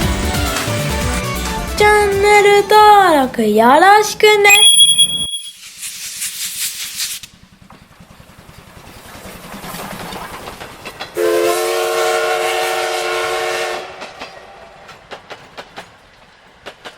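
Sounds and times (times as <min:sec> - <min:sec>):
train whistle: 0:11.2 - 0:14.3.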